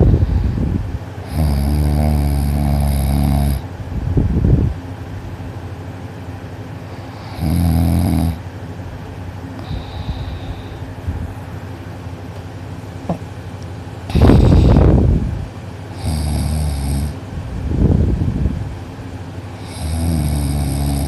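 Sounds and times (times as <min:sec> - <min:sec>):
boy snoring loudly: 0:01.2 - 0:03.6, 0:07.2 - 0:08.4, 0:14.1 - 0:15.0, 0:16.0 - 0:17.2, 0:19.6 - 0:21.0
breathy exhale: 0:09.6 - 0:11.0, 0:14.1 - 0:15.0.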